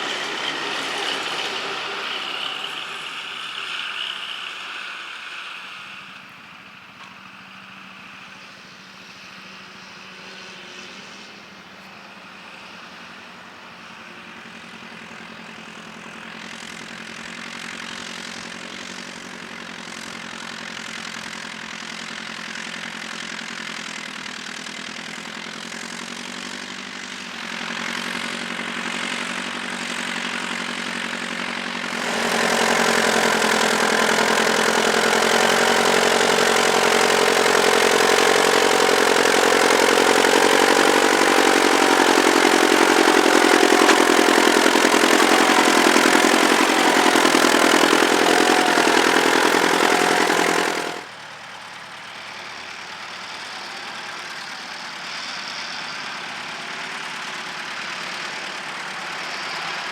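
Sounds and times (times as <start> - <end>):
tractor engine running: 0.0 - 6.9, 24.3 - 51.6.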